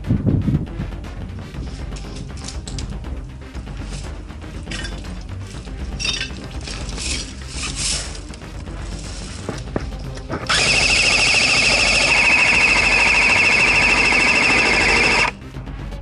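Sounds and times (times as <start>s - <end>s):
airsoft machine gun firing: 10.5s - 15.3s.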